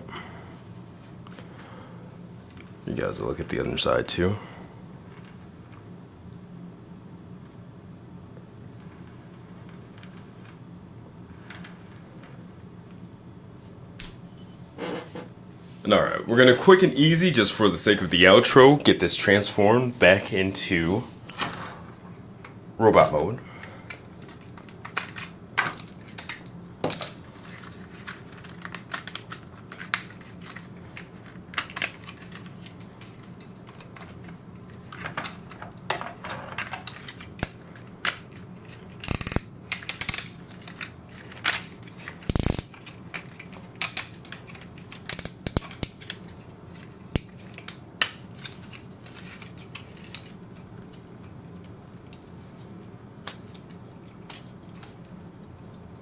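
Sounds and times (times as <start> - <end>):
toy parts clicking and snapping: 39.0 - 46.2.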